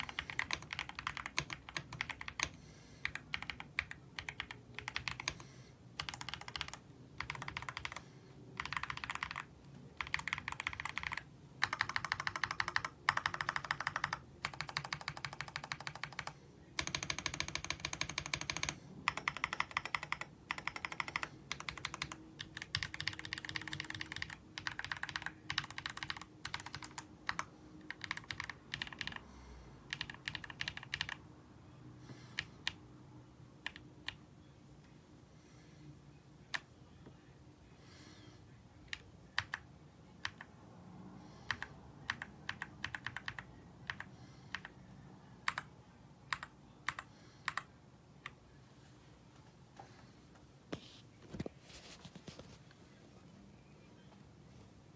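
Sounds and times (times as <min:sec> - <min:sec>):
mechanical keyboard typing: 0:00.0 - 0:08.0, 0:08.6 - 0:29.2, 0:29.9 - 0:31.2, 0:32.4 - 0:32.8, 0:33.6 - 0:34.2, 0:38.9 - 0:40.5, 0:41.5 - 0:44.8, 0:45.4 - 0:48.4.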